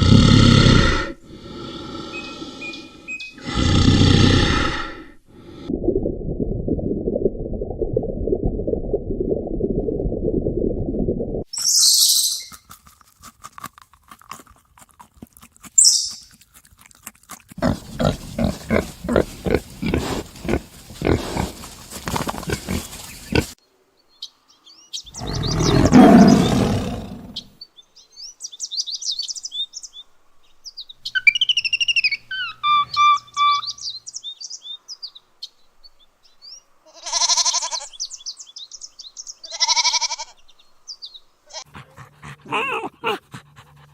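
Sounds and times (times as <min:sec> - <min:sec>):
bird chirping: 0:02.0 - 0:03.5, 0:11.5 - 0:12.6, 0:15.8 - 0:16.3, 0:17.6 - 0:36.7
goat bleating: 0:36.9 - 0:37.9, 0:39.5 - 0:40.4.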